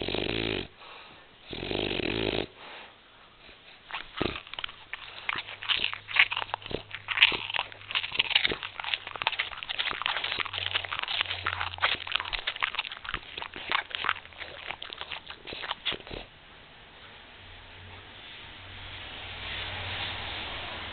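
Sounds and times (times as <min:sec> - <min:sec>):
dog clicking mouth and nose noises: 0:03.4 - 0:16.3.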